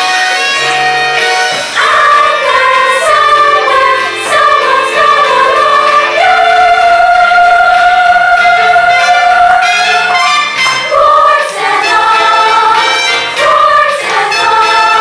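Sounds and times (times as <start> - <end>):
instrumental accompaniment: 0.0 - 15.0
cast singing a chorus: 1.8 - 10.1, 10.9 - 15.0.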